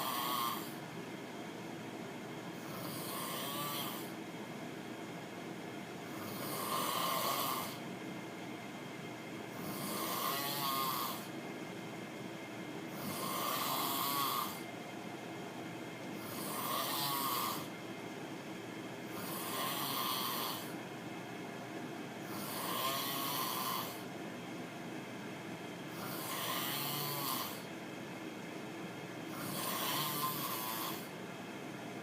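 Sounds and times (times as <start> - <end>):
person snoring: 0.0 - 0.8, 2.6 - 4.2, 6.1 - 7.8, 9.5 - 11.3, 12.9 - 14.7, 16.2 - 17.7, 19.1 - 20.8, 22.2 - 24.1, 25.9 - 27.7, 29.3 - 31.1.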